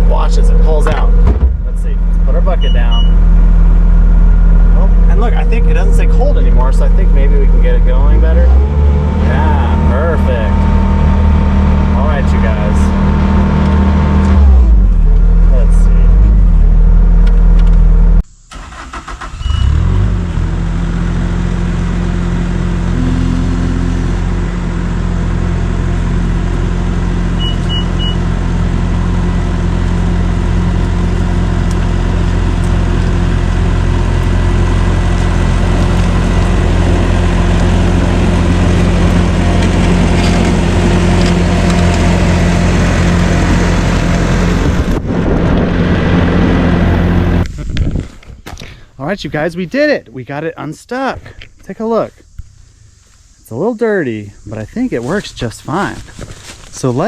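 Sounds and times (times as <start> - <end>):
skid steer engine running: 0.0 - 18.2, 19.5 - 47.6
short high beeps: 2.6 - 3.2, 27.4 - 28.2.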